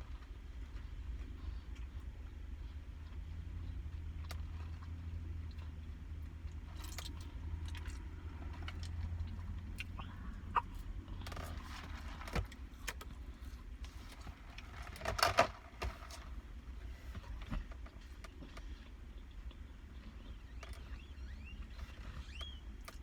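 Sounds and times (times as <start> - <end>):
low hum inside a car: 0.0 - 23.0
clicks and rustles of handling: 11.1 - 16.4.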